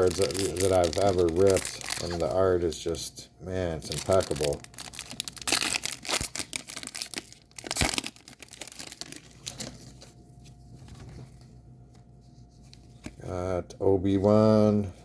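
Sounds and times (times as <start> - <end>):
cards being handled: 0.0 - 2.8
foil pack crinkling: 0.0 - 3.0, 3.8 - 10.1.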